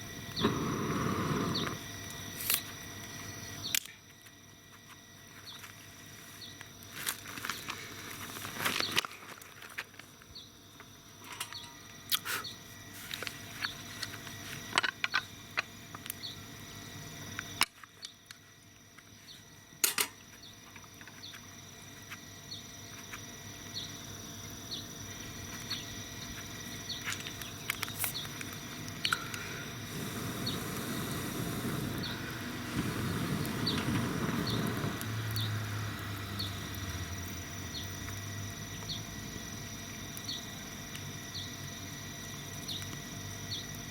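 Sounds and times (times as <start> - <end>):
fire crackling and popping: 0.0 - 3.9, 25.0 - 38.9
broad rushing noise: 29.8 - 36.0.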